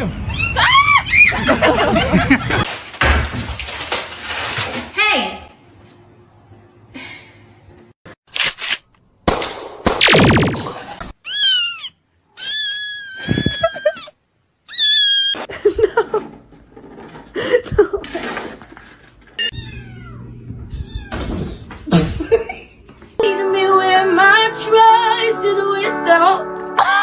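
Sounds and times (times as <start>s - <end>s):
cats meowing: 19.4s - 21.2s
music: 23.2s - 27.0s.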